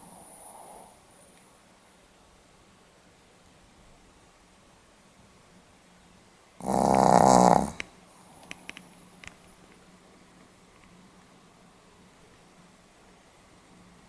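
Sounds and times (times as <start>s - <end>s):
dog snoring: 0.0s - 1.0s, 6.6s - 8.7s.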